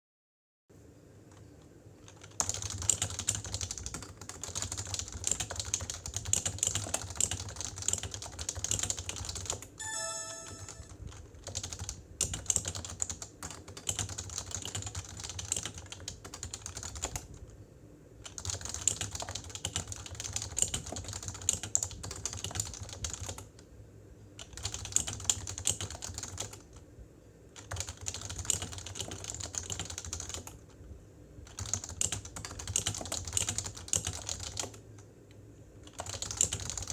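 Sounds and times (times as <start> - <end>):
typing on a keyboard: 1.3 - 17.6, 18.2 - 23.7, 24.4 - 26.9, 27.6 - 30.8, 31.4 - 35.1, 35.8 - 36.9
brief tone: 9.8 - 11.0.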